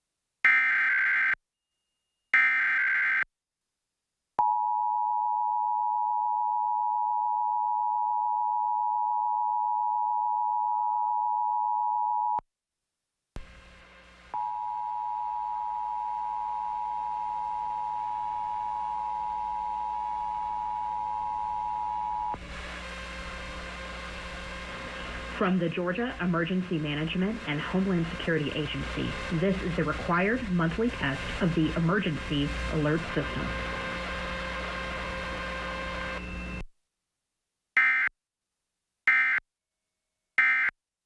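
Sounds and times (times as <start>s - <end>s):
steady hiss and hum: 22.4s - 36.6s.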